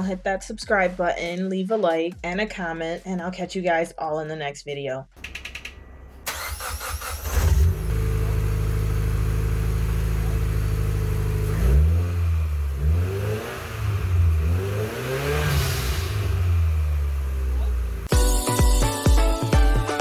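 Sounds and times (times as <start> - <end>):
engine starting and idling: 5.2 - 12.9
engine revving: 5.2 - 18.1.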